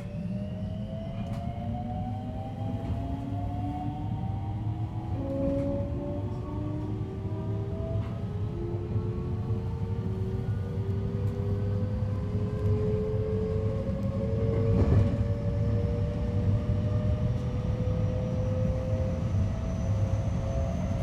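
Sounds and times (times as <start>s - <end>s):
wheels rumbling on rail: 0.0s - 21.0s.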